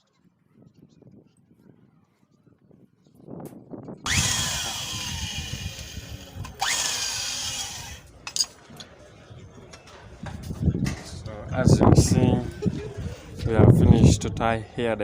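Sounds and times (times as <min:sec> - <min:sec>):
electric drill whining: 0:04.1 - 0:08.1.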